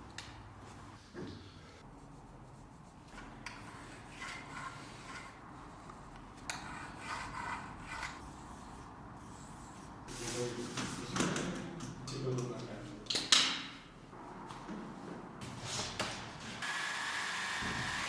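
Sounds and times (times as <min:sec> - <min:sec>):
rubbing and scraping handling noises: 0:01.8 - 0:11.3.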